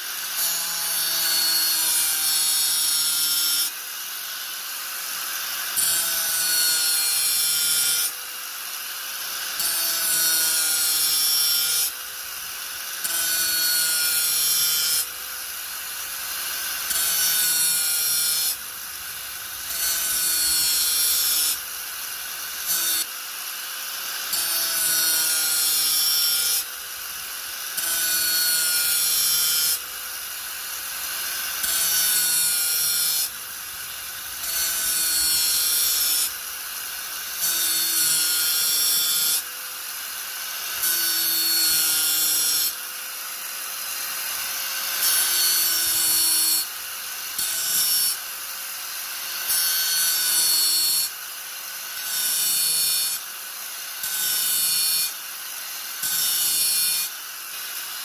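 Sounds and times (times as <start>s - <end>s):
angle grinder grinding: 8.8s - 42.8s.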